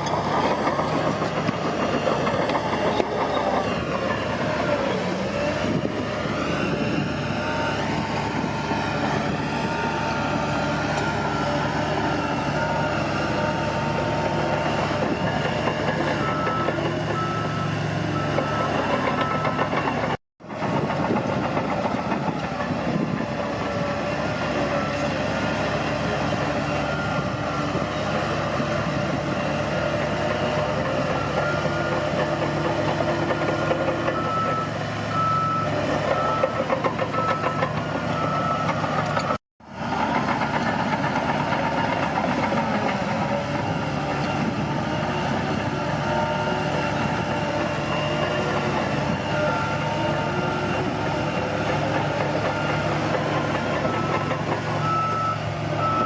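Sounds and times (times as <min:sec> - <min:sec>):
diesel engine running: 0:00.0 - 0:56.0
reversing alarm beeping: 0:00.1 - 0:20.2, 0:26.4 - 0:28.4, 0:33.4 - 0:39.4, 0:47.5 - 0:56.0.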